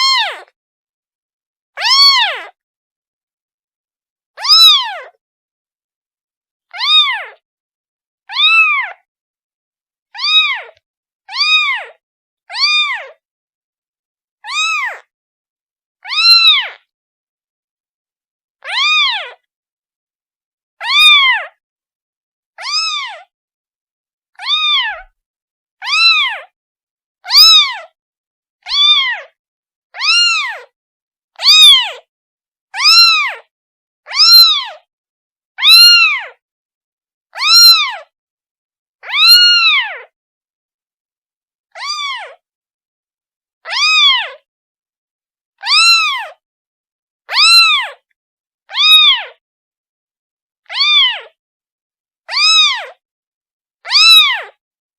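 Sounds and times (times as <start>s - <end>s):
kitten meowing: 0.0s - 0.5s, 1.8s - 2.6s, 4.4s - 5.1s, 6.7s - 7.4s, 8.3s - 9.1s, 10.2s - 13.2s, 14.4s - 15.1s, 16.0s - 16.8s, 18.6s - 19.4s, 20.8s - 21.6s, 22.6s - 23.3s, 24.4s - 25.2s, 25.8s - 26.5s, 27.3s - 28.0s, 28.7s - 29.4s, 30.0s - 30.7s, 31.4s - 32.0s, 32.8s - 33.5s, 34.1s - 34.9s, 35.6s - 36.4s, 37.4s - 38.1s, 39.0s - 40.1s, 41.7s - 42.4s, 43.6s - 44.4s, 45.6s - 46.4s, 47.3s - 48.0s, 48.7s - 49.4s, 50.6s - 51.4s, 52.3s - 53.0s, 53.8s - 54.6s.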